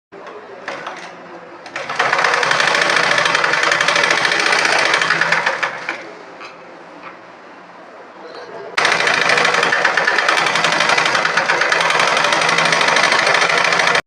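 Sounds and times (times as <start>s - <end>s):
sewing machine stitching: 1.7s - 6.0s, 8.8s - 14.0s.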